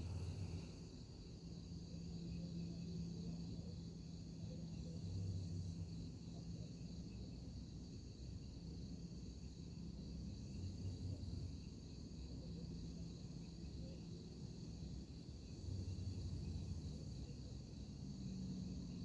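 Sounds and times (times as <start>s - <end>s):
steady low hum: 0.0s - 6.9s.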